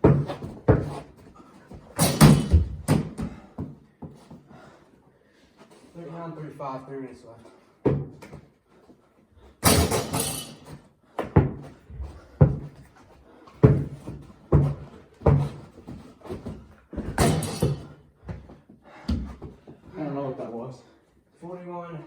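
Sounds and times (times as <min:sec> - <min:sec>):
basketball bouncing on hard floor: 0:00.0 - 0:04.2, 0:07.8 - 0:08.4, 0:09.6 - 0:12.9, 0:13.6 - 0:19.6.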